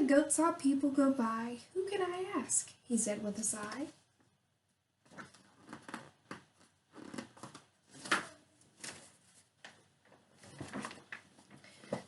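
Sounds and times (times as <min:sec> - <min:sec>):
paper page rustling: 0:05.1 - 0:11.5.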